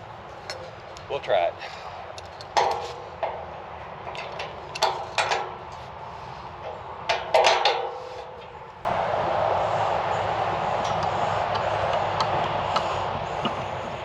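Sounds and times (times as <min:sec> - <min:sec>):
metallic clanks of gate hardware: 0:02.2 - 0:05.7, 0:06.6 - 0:08.7
loud rushing noise: 0:08.8 - 0:14.0.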